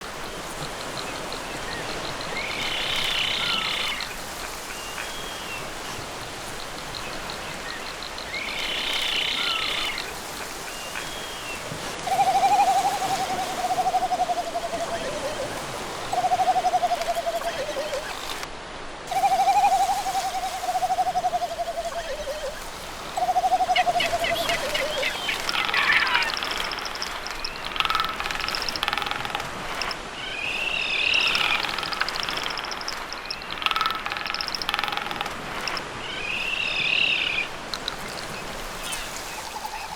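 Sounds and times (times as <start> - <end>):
birds hooting display calls: 0.1 - 18.5, 19.1 - 39.9
long wavering bird calls: 0.2 - 18.5, 19.1 - 39.9
high bird chattering: 12.1 - 18.4, 19.1 - 29.9.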